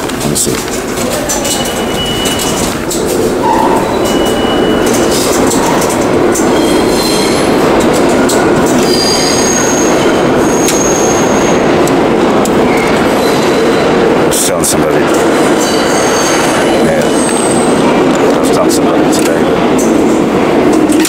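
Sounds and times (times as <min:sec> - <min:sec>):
subway train rumbling: 0:00.0 - 0:21.0
high-pitched wheel squeals: 0:01.3 - 0:02.7, 0:03.4 - 0:07.6, 0:08.2 - 0:11.7, 0:12.7 - 0:13.9, 0:15.5 - 0:17.8.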